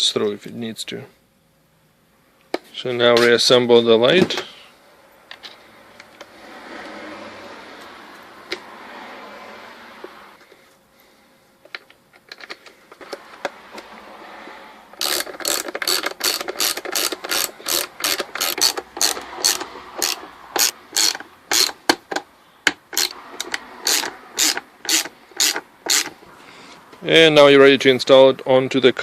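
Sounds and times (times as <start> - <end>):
ratchet clicking: 15.0 - 22.2, 22.8 - 26.2.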